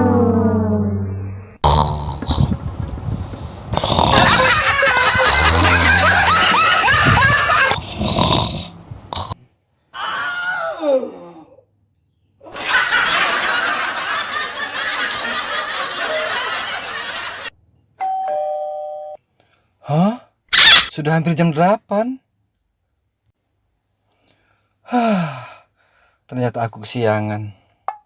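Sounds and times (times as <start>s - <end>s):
sliding sound falling in pitch: 0.0s - 1.6s
people laughing: 4.2s - 7.8s, 12.5s - 17.5s.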